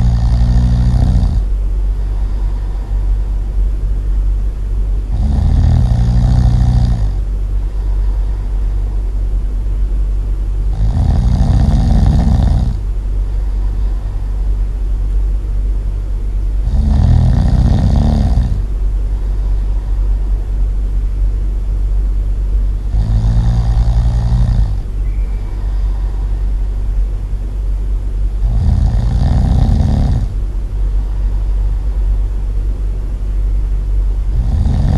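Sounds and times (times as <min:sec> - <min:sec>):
loud snoring: 0:00.0 - 0:03.1, 0:05.1 - 0:07.2, 0:10.7 - 0:12.8, 0:16.6 - 0:19.9, 0:22.8 - 0:24.9, 0:28.4 - 0:30.4, 0:34.3 - 0:34.9
steady low hum: 0:00.0 - 0:34.9.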